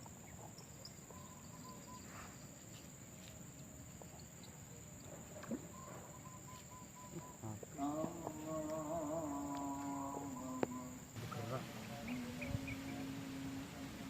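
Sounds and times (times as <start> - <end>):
high-pitched insect drone: 5.8 - 14.0.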